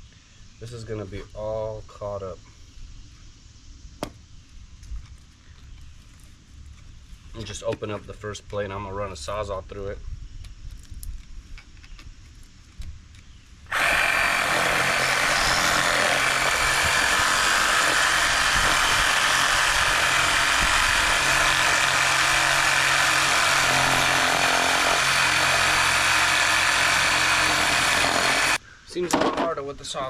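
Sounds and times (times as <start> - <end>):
power tool cutting metal: 13.7 - 28.6.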